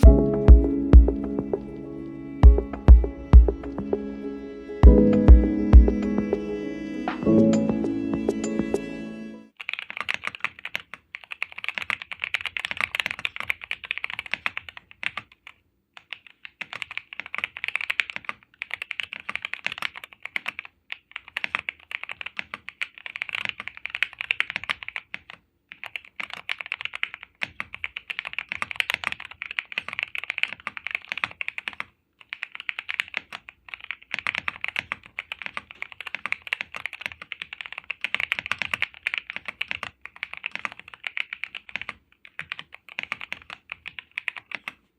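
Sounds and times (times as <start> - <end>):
mechanical keyboard typing: 9.6 - 44.9.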